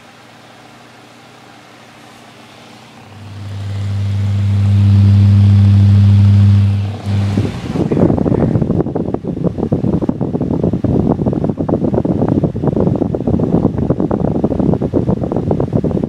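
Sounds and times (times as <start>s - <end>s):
low electric motor hum: 0.0s - 10.3s
electric fan whirring: 0.0s - 16.0s
wind buffeting microphone: 6.7s - 16.0s.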